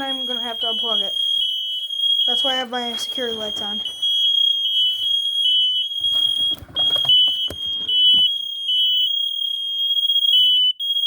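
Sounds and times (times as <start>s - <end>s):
smoke alarms shrieking: 0.0s - 11.0s
scuffling noise: 6.0s - 8.4s.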